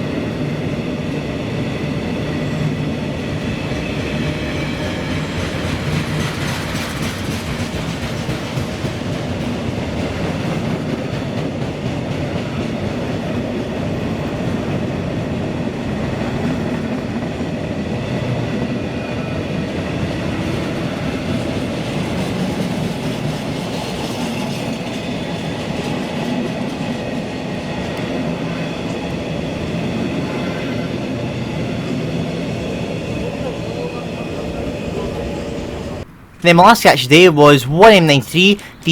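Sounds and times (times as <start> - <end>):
train wheels clattering on track: 0.0 - 36.0.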